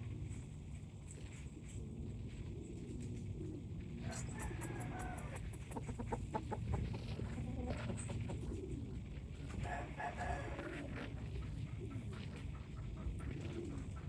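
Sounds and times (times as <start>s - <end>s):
chickens clucking and calling: 4.0s - 14.0s.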